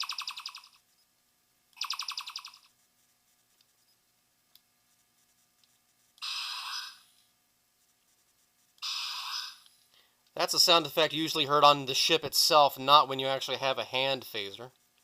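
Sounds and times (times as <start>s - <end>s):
electronic pulsing chirps: 0.0s - 0.8s, 1.8s - 2.7s.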